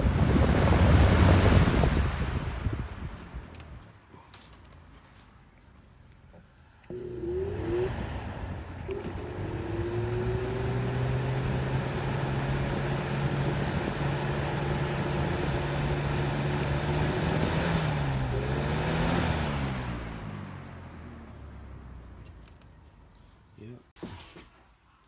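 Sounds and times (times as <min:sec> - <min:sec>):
box fan running: 0:00.0 - 0:03.8, 0:06.8 - 0:20.8
fan winding down: 0:00.0 - 0:03.8, 0:06.8 - 0:22.0.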